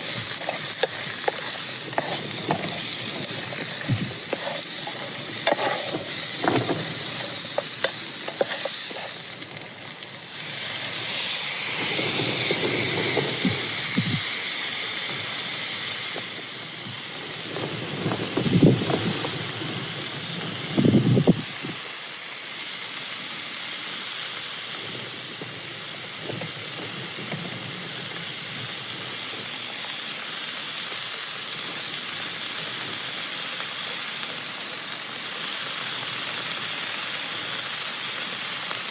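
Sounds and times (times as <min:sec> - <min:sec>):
food sizzling in a pan: 0:00.0 - 0:38.9
utensil knocking and scraping: 0:00.3 - 0:09.2.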